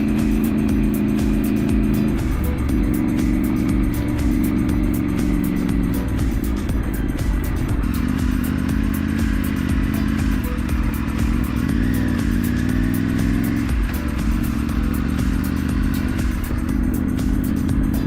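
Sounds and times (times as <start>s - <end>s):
motorcycle engine running: 0.0s - 18.0s
road and wind noise: 0.0s - 18.0s.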